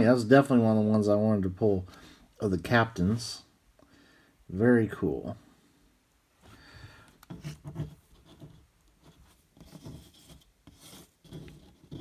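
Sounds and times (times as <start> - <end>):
cards sliding and scraping: 7.1 - 12.0.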